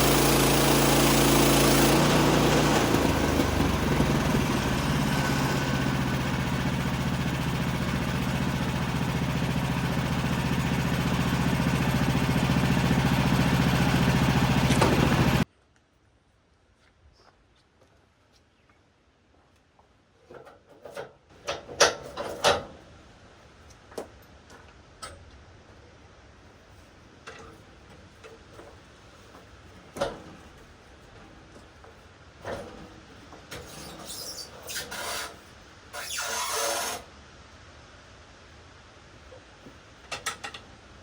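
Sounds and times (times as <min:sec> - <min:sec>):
wood scraping on wood and metal: 0:32.4 - 0:37.1.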